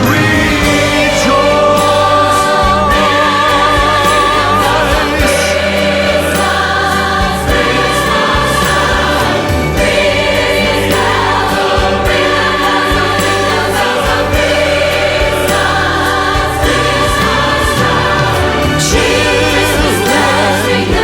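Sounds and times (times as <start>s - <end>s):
choir singing with orchestra: 0.0s - 21.0s
percussion hits: 0.0s - 21.0s.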